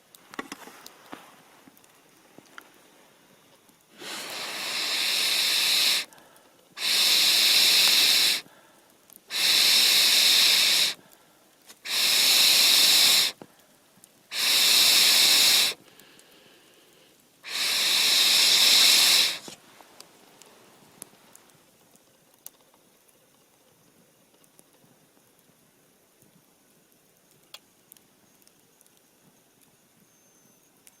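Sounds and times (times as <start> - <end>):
person blowing hissing breaths: 3.9 - 13.7, 14.3 - 19.6.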